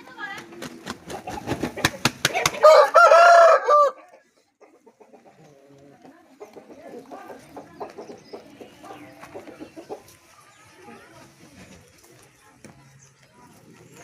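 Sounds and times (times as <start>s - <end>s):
chickens clucking: 0.0s - 14.0s
rooster crowing: 2.6s - 4.0s.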